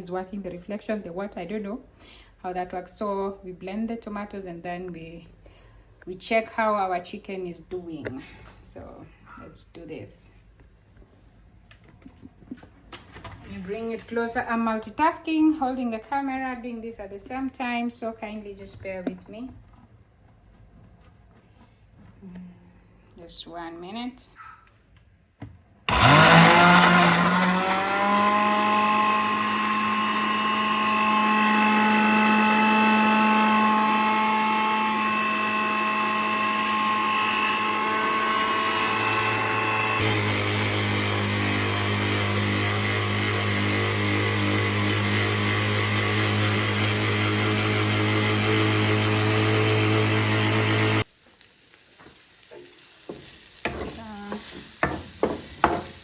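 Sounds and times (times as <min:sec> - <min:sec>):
blender motor whining: 0:25.9 - 0:51.1, 0:52.0 - 0:56.0
frying sizzle: 0:51.0 - 0:56.0.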